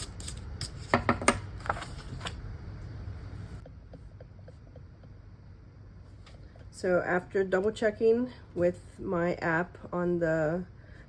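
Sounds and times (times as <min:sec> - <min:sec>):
paper rustling: 0:01.6 - 0:02.4.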